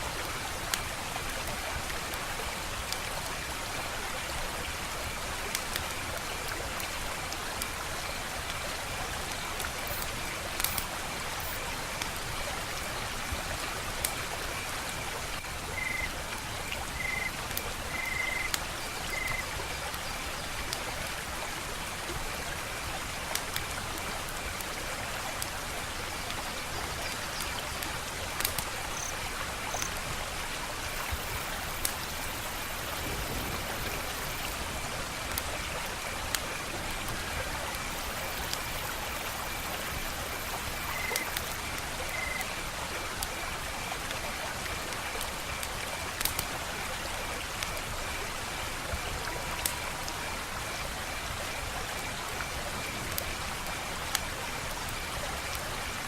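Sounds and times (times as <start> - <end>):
wood fire crackling: 9.2 - 12.2, 27.9 - 30.0, 45.6 - 46.4
night insects trilling: 15.8 - 16.1, 17.0 - 19.5, 28.9 - 30.0, 37.9 - 42.5.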